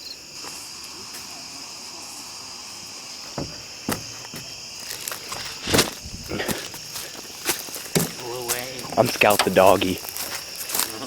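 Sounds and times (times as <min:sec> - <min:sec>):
crickets chirring: 0:00.0 - 0:11.0
soft knocks: 0:03.3 - 0:04.6, 0:07.9 - 0:09.0.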